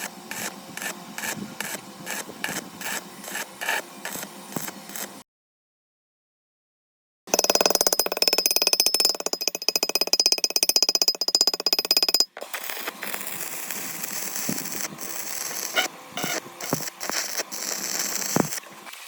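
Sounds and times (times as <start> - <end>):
power tool rattling: 7.3 - 18.6.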